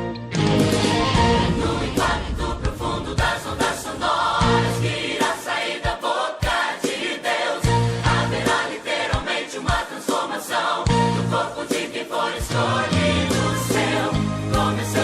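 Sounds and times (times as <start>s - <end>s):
bass: 0.0s - 5.0s, 7.6s - 8.6s, 10.9s - 11.6s, 12.4s - 15.0s
drums: 0.3s - 15.0s
choir-style voices singing: 0.8s - 15.0s.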